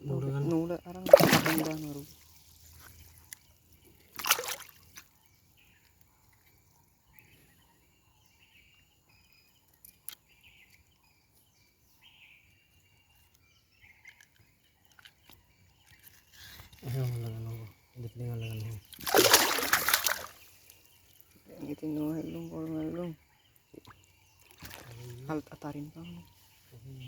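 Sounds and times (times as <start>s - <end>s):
river water splash: 1.0s - 2.1s, 4.2s - 4.8s, 19.0s - 20.4s.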